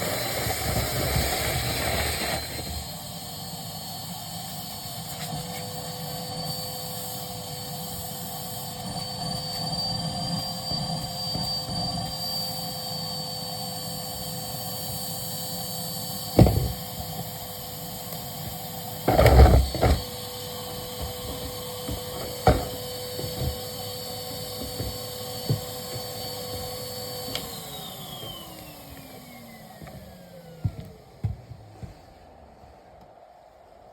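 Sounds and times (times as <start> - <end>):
vacuum cleaner whining: 0.0 - 33.9
knocks and clatters from hose: 16.4 - 17.3, 18.5 - 26.2.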